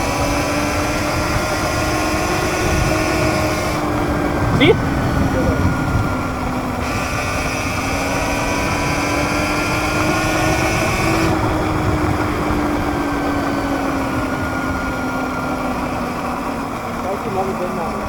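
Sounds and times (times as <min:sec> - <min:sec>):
higher whine: 0:00.0 - 0:17.0
electric motor whining: 0:00.0 - 0:18.0
dense low rumble: 0:03.8 - 0:06.8.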